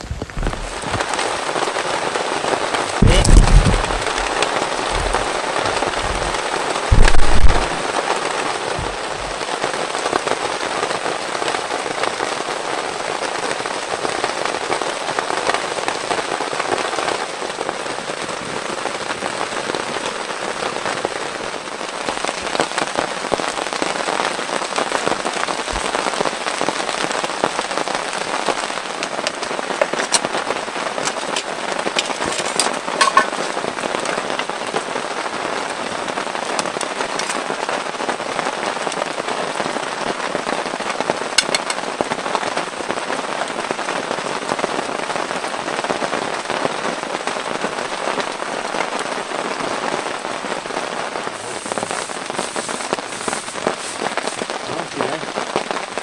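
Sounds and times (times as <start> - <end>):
low thumps: 0.0 - 1.0, 3.0 - 7.8, 8.8 - 9.4
heavy rain falling: 0.0 - 56.0.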